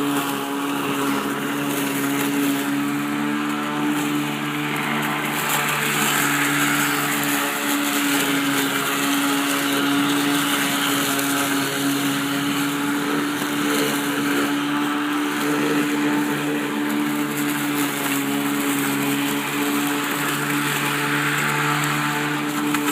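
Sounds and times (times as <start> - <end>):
electric lawnmower mowing grass: 0.0 - 22.9.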